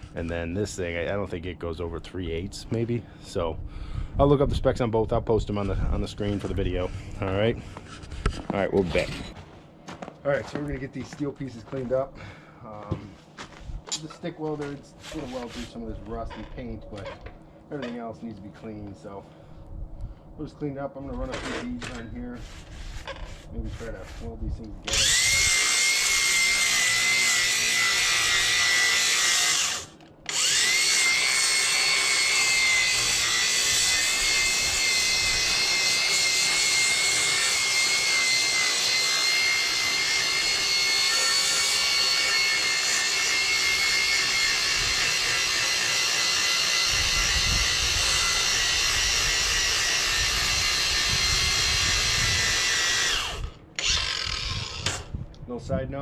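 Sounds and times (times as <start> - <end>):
angle grinder on steel: 24.9 - 55.1.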